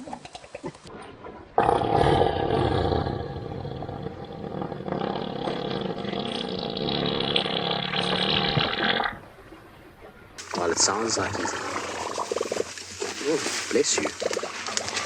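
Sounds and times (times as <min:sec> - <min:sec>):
elephant farting: 0:01.6 - 0:09.3, 0:11.3 - 0:15.0.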